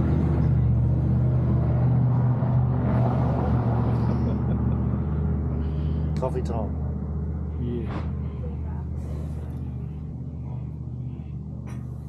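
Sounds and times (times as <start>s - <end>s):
vehicle engine idling: 3.8s - 12.0s.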